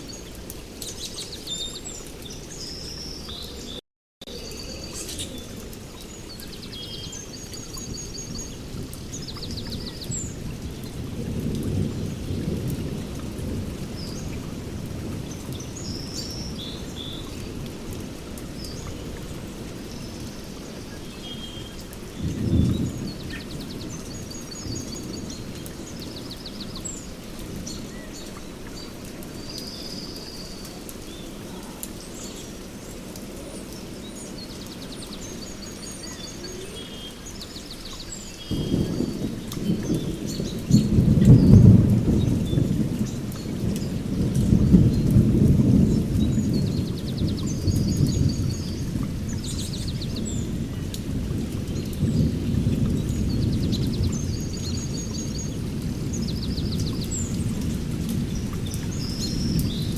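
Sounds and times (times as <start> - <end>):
steady rainfall: 0.0 - 59.9
rolling thunder rumble: 7.9 - 18.6, 22.1 - 28.0, 38.4 - 59.9.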